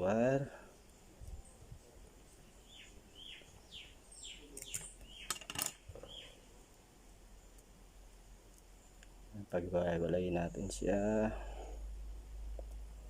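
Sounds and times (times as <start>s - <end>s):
bird chirping: 1.3s - 6.5s
sharp clicks: 4.6s - 5.8s.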